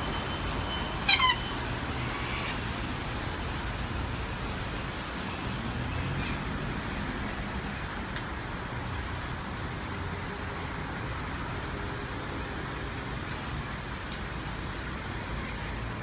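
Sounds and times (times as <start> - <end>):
background traffic rumble: 0.0 - 16.0
parrot squawk: 1.1 - 1.5.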